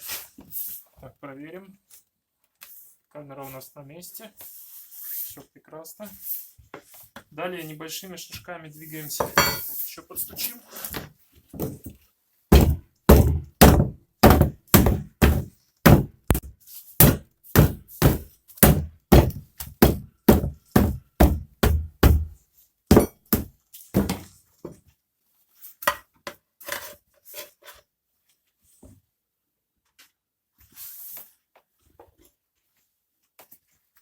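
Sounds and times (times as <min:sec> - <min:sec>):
hammer thunks on tire: 0:17.0 - 0:19.4.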